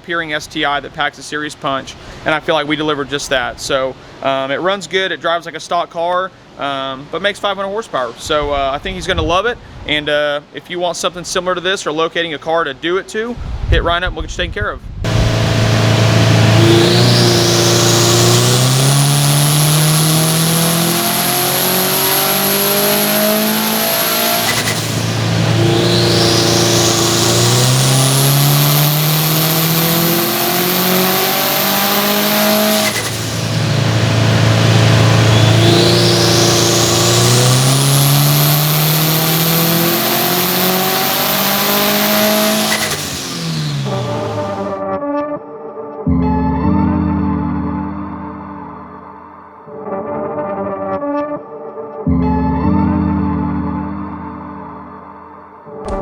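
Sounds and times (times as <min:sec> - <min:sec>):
car engine at full throttle: 0:15.1 - 0:44.8
turbo whistle: 0:15.4 - 0:30.5, 0:32.7 - 0:38.8.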